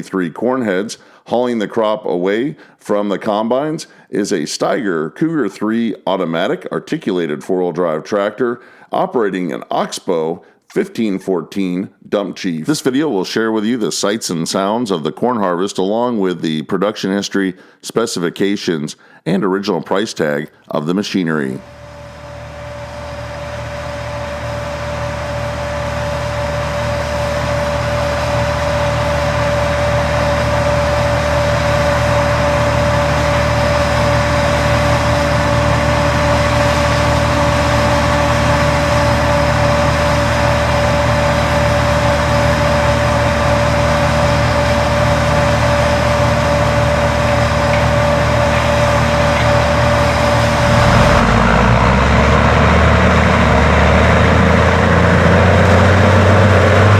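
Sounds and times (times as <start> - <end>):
combine harvester drone: 21.6 - 56.9
constant machine whine: 21.6 - 56.9.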